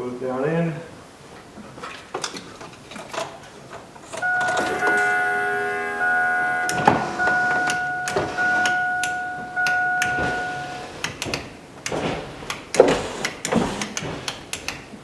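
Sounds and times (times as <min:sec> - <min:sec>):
car warning chime: 0:04.2 - 0:11.1.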